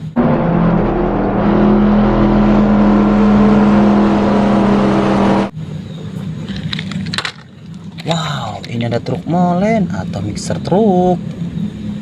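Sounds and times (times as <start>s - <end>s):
race car engine: 0.0s - 8.8s.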